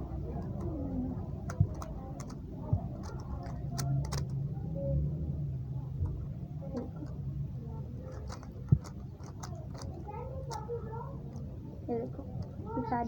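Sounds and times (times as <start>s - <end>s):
plastic cube twisting clicks: 1.4s - 2.4s, 3.0s - 4.4s, 8.1s - 10.7s.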